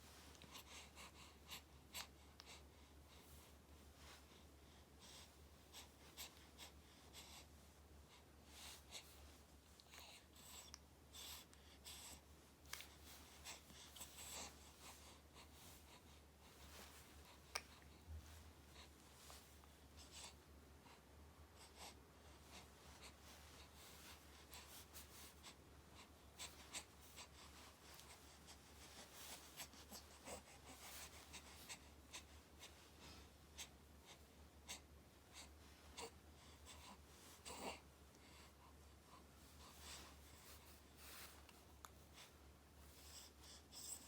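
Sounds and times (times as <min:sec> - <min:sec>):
low steady hum: 0:00.0 - 0:44.0
soft rustling and scratching: 0:12.1 - 0:20.5, 0:21.8 - 0:44.0.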